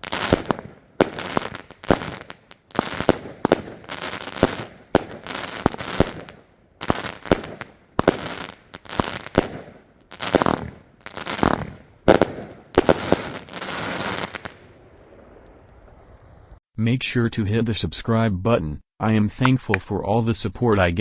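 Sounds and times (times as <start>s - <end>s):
fireworks crackling: 0.0s - 16.6s
fireworks shots: 0.0s - 16.6s.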